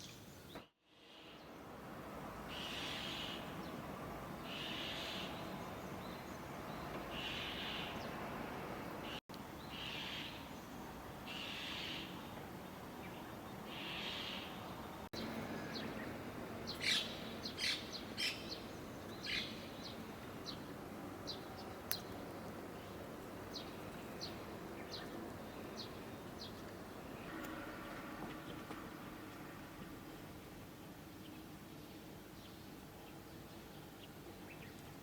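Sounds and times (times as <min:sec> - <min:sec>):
small birds chirping: 0:09.0 - 0:28.7, 0:30.8 - 0:35.0.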